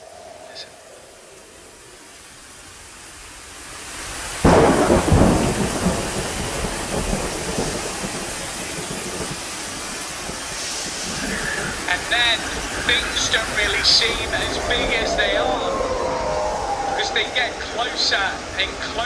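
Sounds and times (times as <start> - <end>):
heavy rain: 0.0 - 19.0
loud thunderclap rumbling: 4.1 - 19.0.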